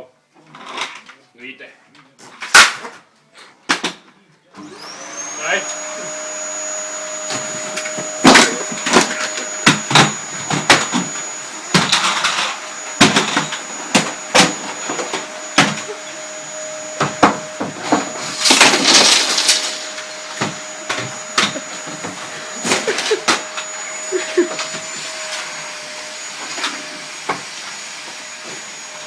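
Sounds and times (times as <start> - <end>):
vacuum cleaner running: 4.6 - 29.0
vacuum knocking and bumping: 16.8 - 19.2, 20.0 - 23.7.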